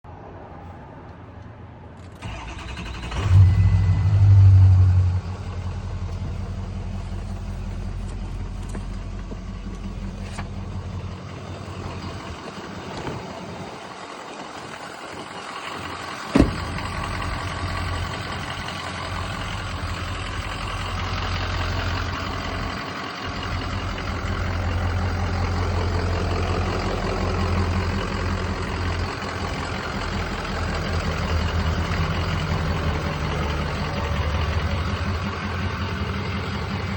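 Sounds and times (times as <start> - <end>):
diesel truck engine idling: 2.1 - 36.9
sharp knock: 16.4 - 16.8.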